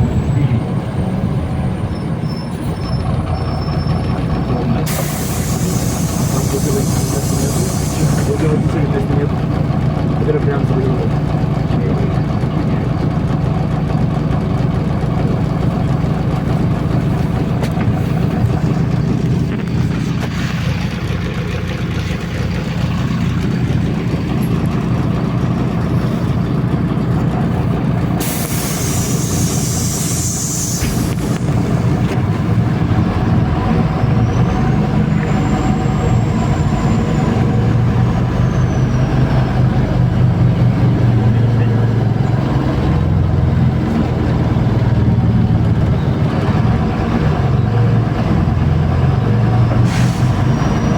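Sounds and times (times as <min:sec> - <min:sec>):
bus engine humming: 0:00.0 - 0:50.9
faint high squeal: 0:01.6 - 0:04.4, 0:34.0 - 0:39.3, 0:49.6 - 0:50.9
compressed air hiss: 0:04.9 - 0:08.4, 0:28.2 - 0:31.6.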